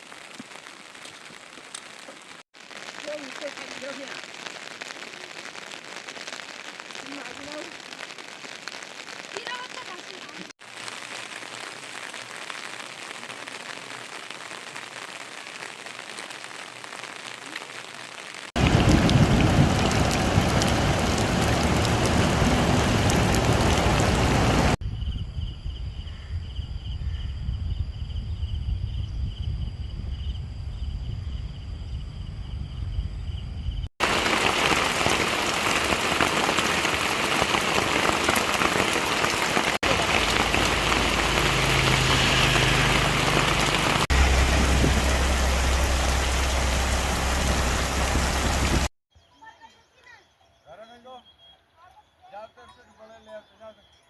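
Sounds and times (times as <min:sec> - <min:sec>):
rain falling: 0:00.0 - 0:24.8, 0:34.0 - 0:48.9.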